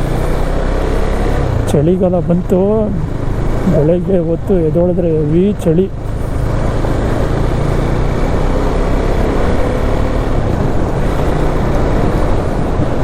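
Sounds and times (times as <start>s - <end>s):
motorcycle engine: 0.0s - 13.0s
wind rush: 5.5s - 13.0s.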